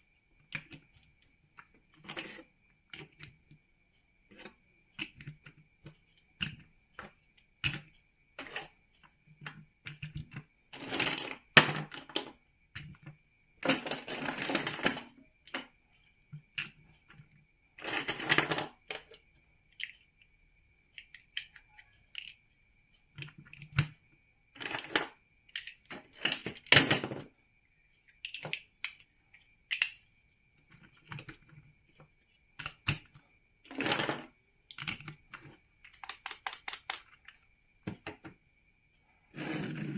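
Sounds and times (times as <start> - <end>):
plastic bricks clicking and snapping: 28.2 - 29.1, 29.7 - 30.0, 33.8 - 37.4.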